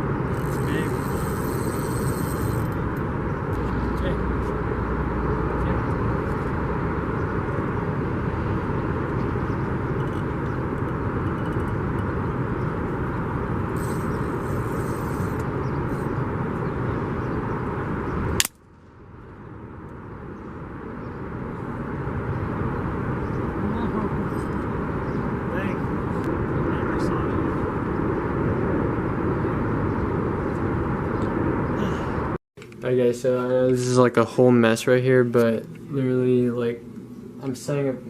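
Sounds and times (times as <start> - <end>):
sharp click: 18.4 - 18.6.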